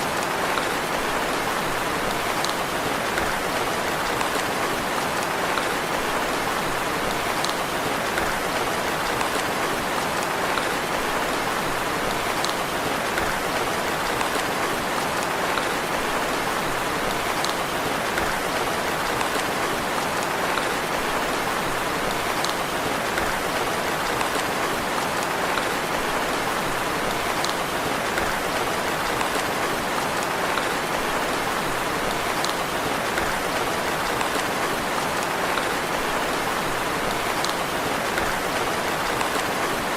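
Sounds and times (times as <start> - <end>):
gentle rain: 0.0 - 39.9.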